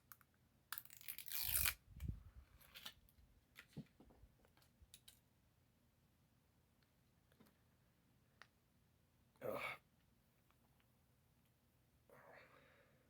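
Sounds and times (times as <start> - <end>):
packaging tearing and crinkling: 0.8 - 1.8.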